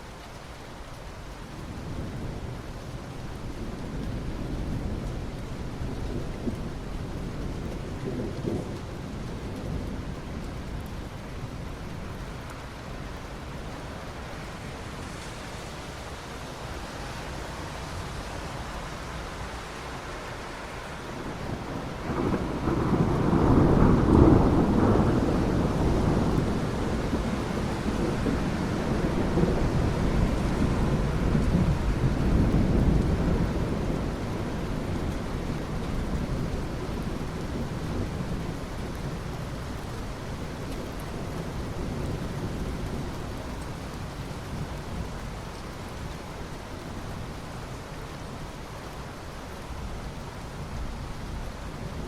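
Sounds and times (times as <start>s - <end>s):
steady rain: 0.0s - 52.0s
low thunder rumble: 20.7s - 45.1s.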